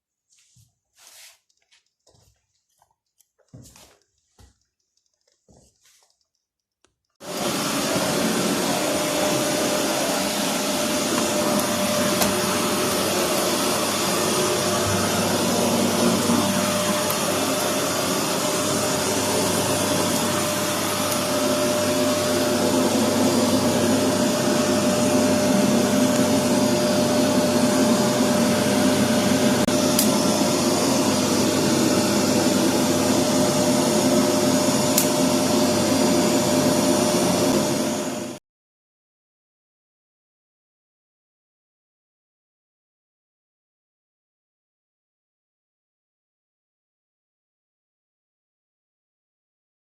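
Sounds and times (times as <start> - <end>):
vacuum cleaner running: 7.2 - 38.4.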